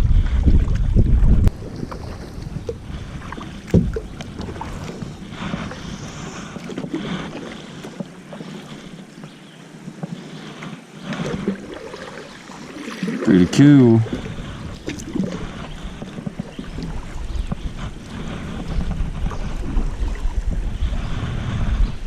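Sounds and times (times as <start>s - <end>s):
wind gust on microphone: 0.0s - 7.4s, 11.0s - 22.0s
paddle splashes: 0.2s - 21.7s
knocks against kayak hull: 3.6s - 4.5s.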